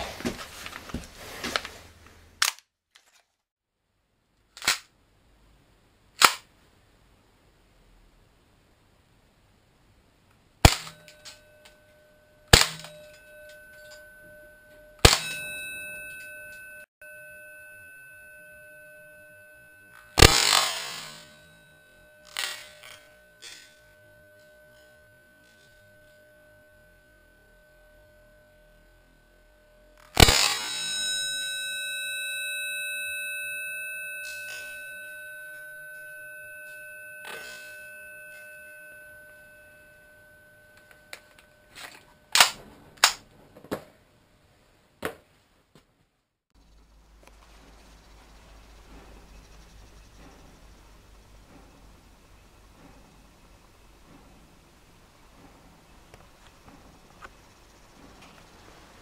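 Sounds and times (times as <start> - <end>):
faint ringing tone: 10.9 - 42.4, 46.6 - 59.0.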